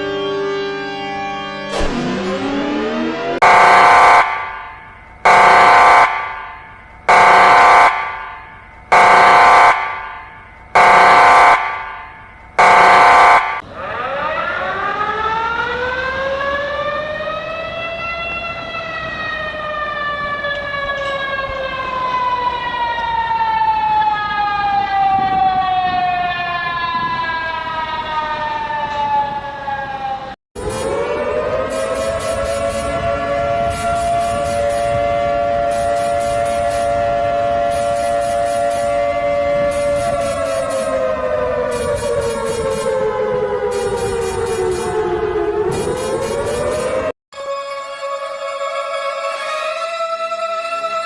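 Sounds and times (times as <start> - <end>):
harsh alarm blasts: 0.0 - 17.5, 30.6 - 50.6
wailing siren: 0.0 - 51.0.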